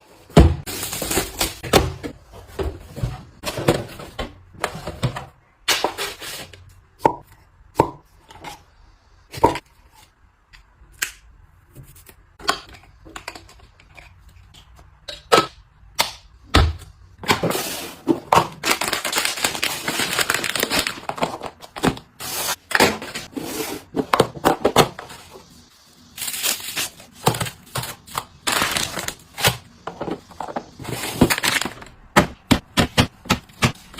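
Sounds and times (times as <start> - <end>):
packaging crinkling and rustling: 17.4 - 23.3, 26.2 - 32.0.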